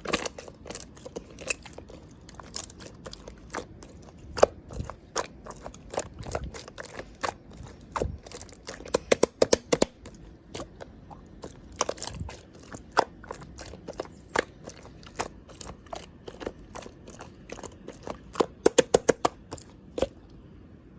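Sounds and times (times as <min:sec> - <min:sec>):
slime popping and clicking: 0:07.9 - 0:10.9, 0:17.6 - 0:19.7.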